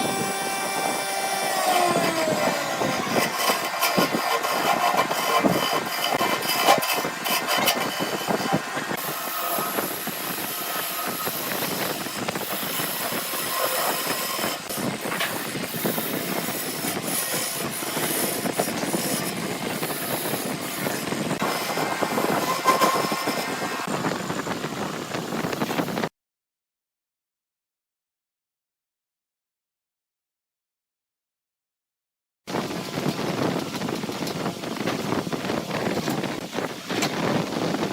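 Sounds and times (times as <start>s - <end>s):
cutting tool shaving wood: 0.0s - 26.0s
wood lathe running: 0.0s - 26.0s
knocking and scraping: 1.8s - 23.7s.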